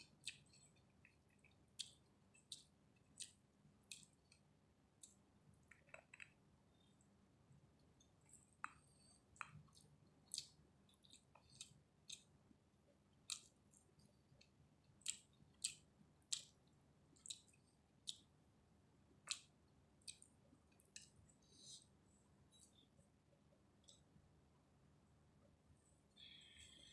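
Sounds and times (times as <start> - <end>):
wet chewing mouth smacks: 17.2 - 18.2, 19.2 - 19.5.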